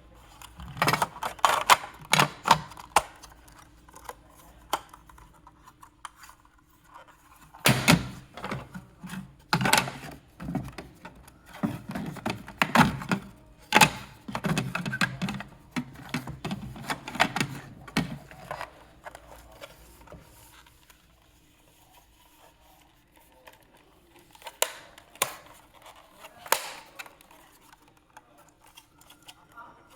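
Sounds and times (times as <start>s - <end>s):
handling clicks and knocks: 0.3s - 5.3s, 7.6s - 20.4s.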